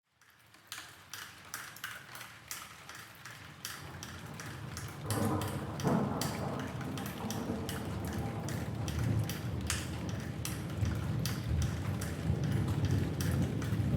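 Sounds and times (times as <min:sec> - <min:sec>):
rain dripping: 0:00.1 - 0:13.9
distant thunder rumbling: 0:05.0 - 0:13.9.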